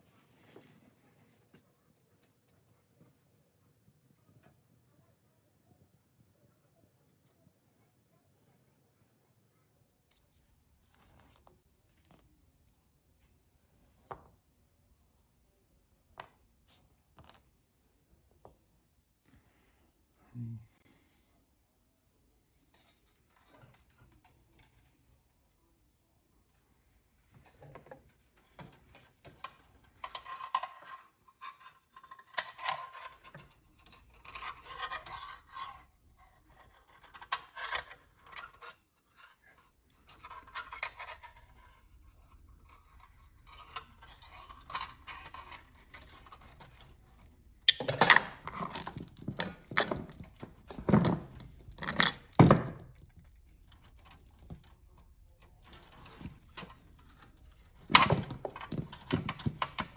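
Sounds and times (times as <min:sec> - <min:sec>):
metal chain clinking and scraping: 0:27.4 - 0:35.9, 0:36.6 - 0:59.9.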